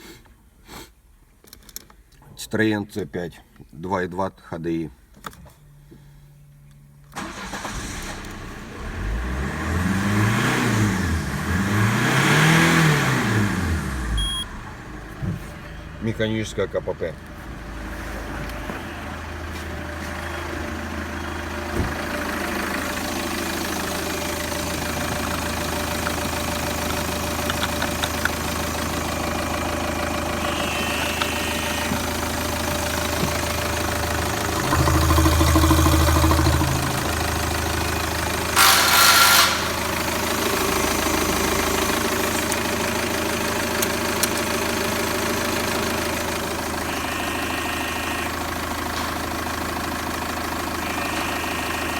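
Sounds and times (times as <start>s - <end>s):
diesel engine idling and revving: 7.1s - 51.9s
short loud burst of noise: 38.6s - 39.8s.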